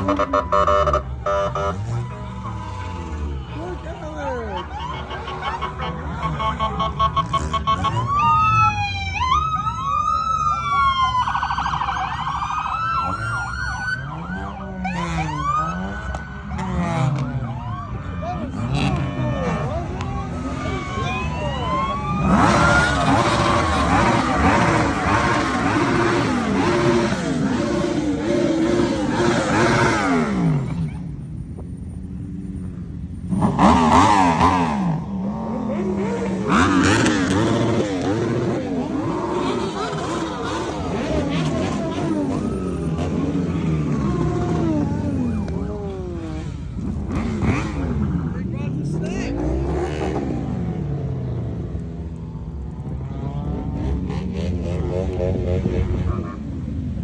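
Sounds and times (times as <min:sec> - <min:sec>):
car engines revving: 0:00.0 - 0:57.0
vehicle sirens wailing: 0:00.0 - 0:57.0
rapid siren warble: 0:06.4 - 0:48.1.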